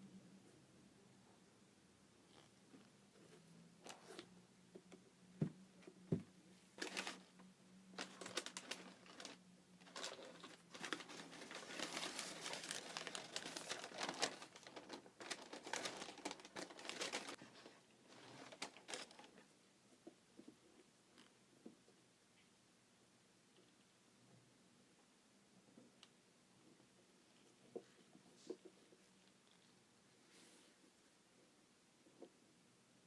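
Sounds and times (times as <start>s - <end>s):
packaging wrap crinkling: 6.8s - 7.3s, 7.9s - 19.4s.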